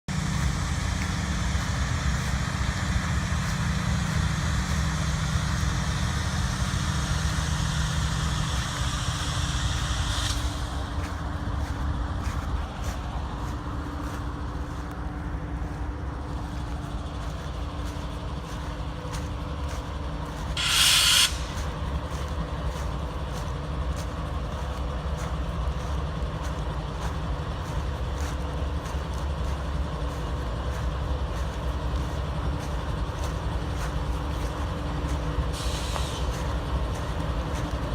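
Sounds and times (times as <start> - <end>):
train rumble: 0.0 - 37.9
wheels clicking on rails: 0.1 - 37.9
air hiss: 20.6 - 21.6, 35.5 - 36.3
steady hiss: 20.6 - 21.8.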